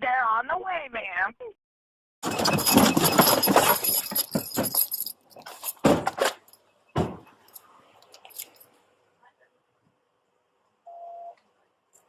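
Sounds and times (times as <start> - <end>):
clattering knocks and rattles: 2.2 - 7.4.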